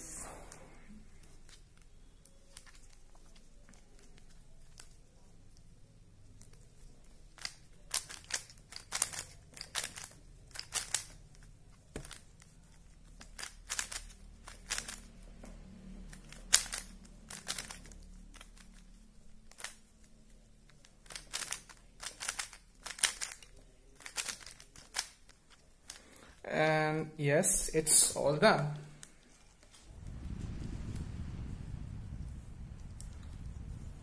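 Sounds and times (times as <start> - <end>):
puzzle cube twisting clicks: 1.3 - 5.7, 6.4 - 15.2, 16.0 - 26.3.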